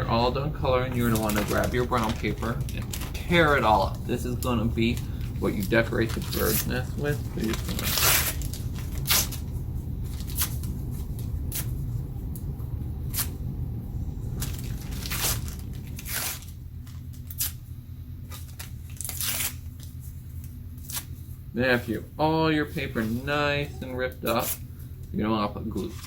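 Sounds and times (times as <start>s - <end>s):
paper tearing: 0.8s - 9.4s, 14.4s - 16.5s, 17.2s - 17.6s, 18.3s - 20.0s, 20.8s - 21.2s, 23.0s - 24.6s.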